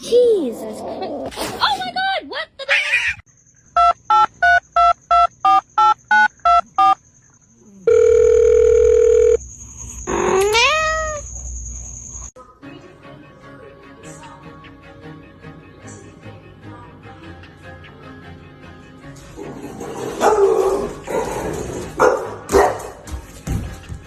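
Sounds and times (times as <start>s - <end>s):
steady phone tone: 3.8s - 7.0s, 7.8s - 9.4s.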